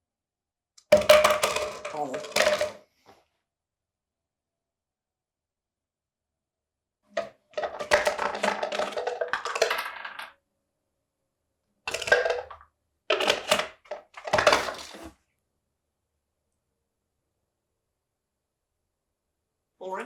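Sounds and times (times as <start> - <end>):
nut rattling in plastic bottle: 0.9 - 2.8, 7.2 - 10.3, 11.9 - 15.1.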